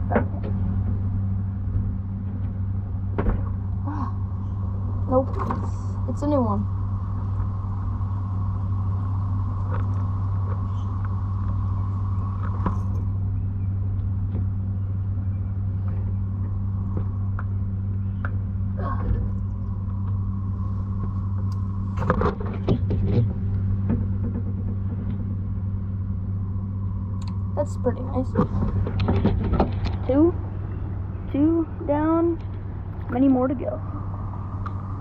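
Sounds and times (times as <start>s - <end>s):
road traffic rumble: 0.0s - 35.0s
sharp knocks and rustles: 20.9s - 25.6s, 28.3s - 30.1s.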